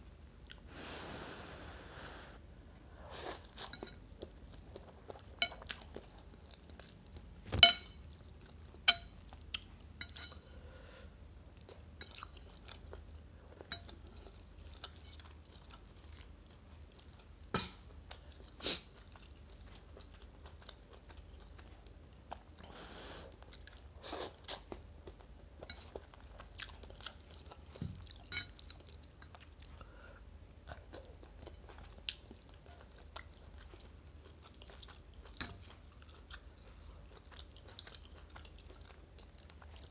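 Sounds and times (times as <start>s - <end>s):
close chewing and biting: 30.7s - 39.9s.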